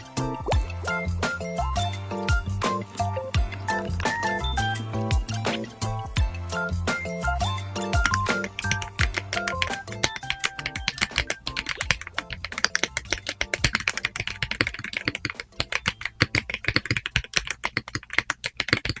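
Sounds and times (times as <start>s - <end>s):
background music: 0.0s - 17.4s
mechanical keyboard typing: 8.0s - 19.0s.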